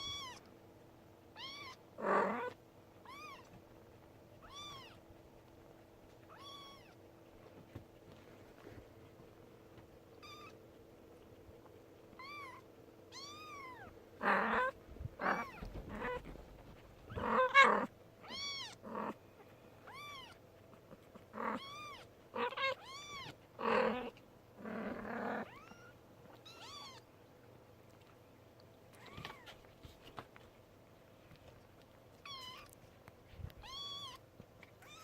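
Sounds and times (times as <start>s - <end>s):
kitten meowing: 0.0s - 0.4s, 1.4s - 1.8s, 2.4s - 3.5s, 4.4s - 5.0s, 6.3s - 7.0s, 10.2s - 10.6s, 12.2s - 13.9s, 14.6s - 16.2s, 17.1s - 18.8s, 19.9s - 20.4s, 21.6s - 23.4s, 25.4s - 27.0s, 32.2s - 32.7s, 33.6s - 34.2s, 34.8s - 35.0s
rustling noise: 7.2s - 10.1s, 14.8s - 17.5s, 29.0s - 34.8s.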